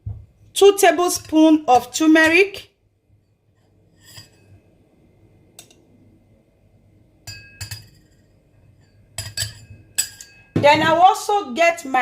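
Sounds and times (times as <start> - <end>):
spoon clinking against glass: 7.2 - 8.2, 8.8 - 10.6.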